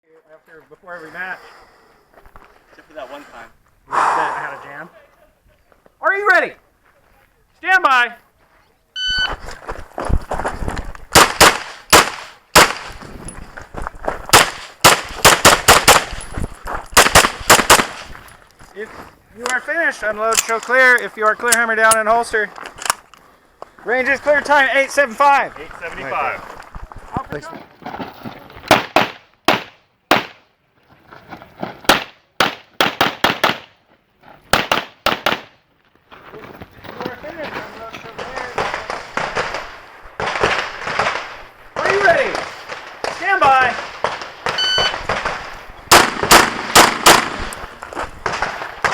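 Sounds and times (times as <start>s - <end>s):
rapid pistol shots: 11.1s - 13.0s, 14.3s - 16.2s, 17.0s - 18.1s, 31.9s - 33.7s, 34.5s - 35.5s, 38.2s - 47.6s.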